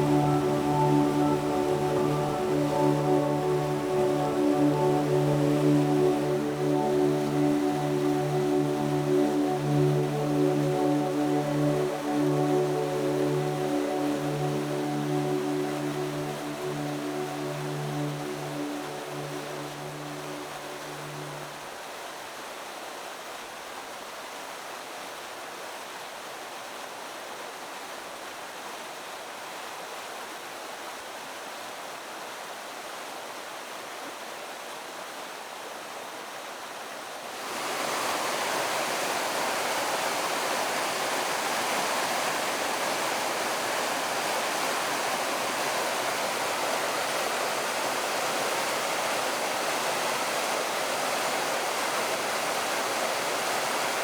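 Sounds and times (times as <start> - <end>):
waterfall rushing over rocks: 0.0 - 54.0.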